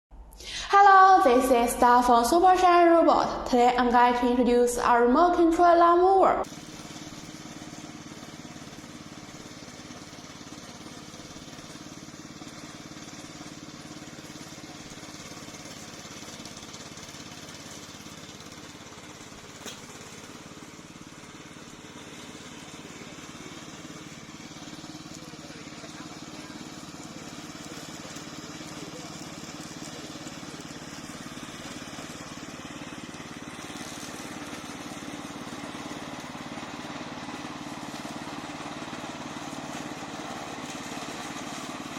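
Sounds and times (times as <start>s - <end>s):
lawn mower engine running: 0.4s - 41.9s.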